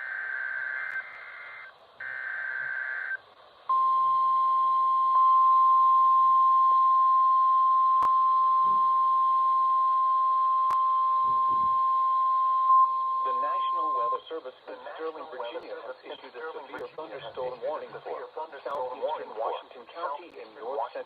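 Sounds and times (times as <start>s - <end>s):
steady warning alarm tone: 11.0s - 14.2s.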